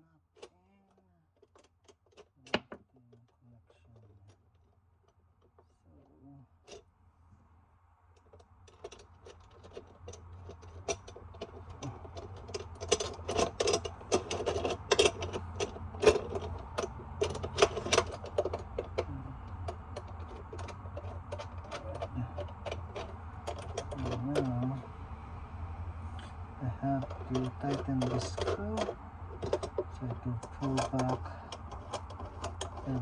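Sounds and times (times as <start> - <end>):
steady low hum: 0.0 - 33.0
metal hardware clicks and rattles: 1.3 - 3.4, 8.1 - 24.9, 26.7 - 33.0.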